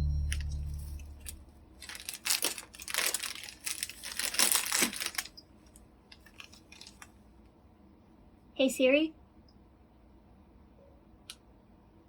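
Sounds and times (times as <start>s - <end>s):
low electronic chime: 0.0s - 1.6s
packaging crinkling: 1.2s - 5.4s, 6.1s - 7.2s.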